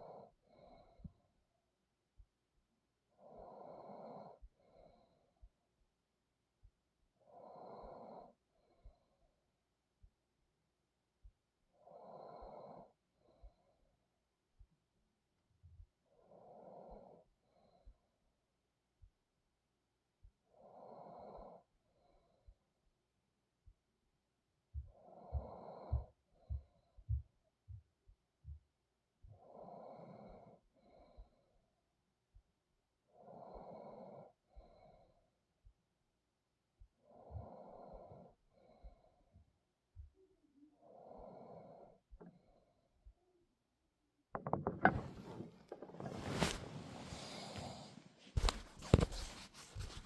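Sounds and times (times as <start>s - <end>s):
knocks: 44.4s - 46.1s
handling noise rustling: 44.4s - 50.0s.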